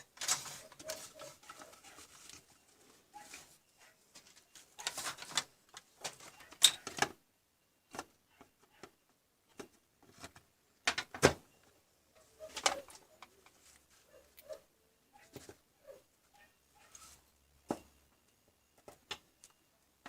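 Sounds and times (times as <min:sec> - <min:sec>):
irregular clicks and knocks: 0:07.9 - 0:11.4.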